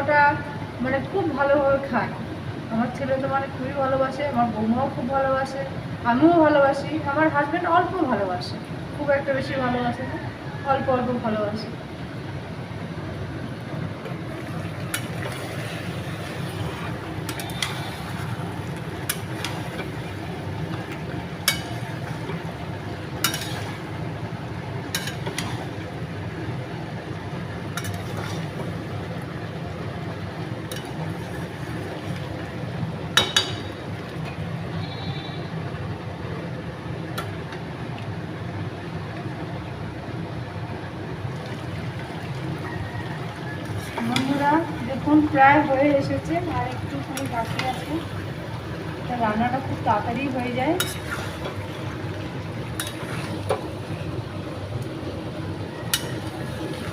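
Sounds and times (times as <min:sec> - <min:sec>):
curry cooking in a pot: 0:11.9 - 0:56.9
utensil clinking against pot: 0:17.3 - 0:18.1, 0:21.4 - 0:22.4, 0:23.2 - 0:23.8, 0:24.9 - 0:25.6, 0:27.8 - 0:28.4, 0:33.2 - 0:33.7, 0:50.8 - 0:51.6, 0:55.9 - 0:56.3.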